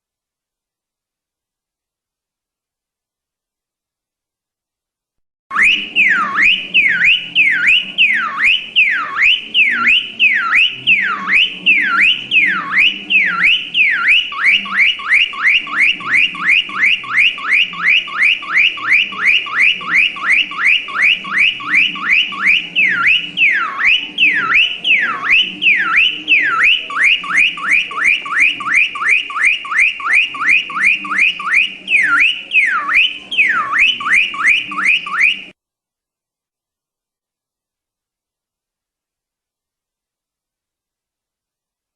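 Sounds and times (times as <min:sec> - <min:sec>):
car alarm siren: 0:05.5 - 0:35.6.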